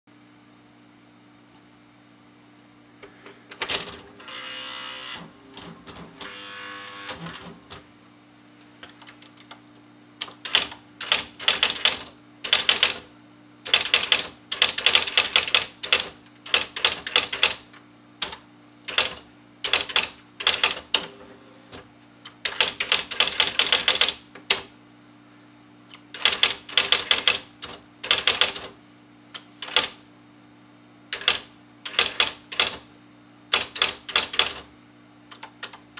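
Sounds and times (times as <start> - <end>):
electric typewriter motor humming: 3.0 - 7.9, 10.2 - 24.7, 25.9 - 30.0, 31.1 - 32.9, 33.5 - 34.7, 35.3 - 35.9
typewriter keys typing: 3.5 - 4.0, 10.2 - 13.0, 13.7 - 21.1, 22.4 - 24.7, 25.9 - 28.7, 29.6 - 30.0, 31.1 - 32.8, 33.5 - 34.7, 35.3 - 35.9
typewriter mechanical runs: 3.5 - 7.8, 10.2 - 24.7, 25.9 - 28.8, 29.6 - 30.0, 31.1 - 32.9, 33.5 - 34.7, 35.3 - 35.9.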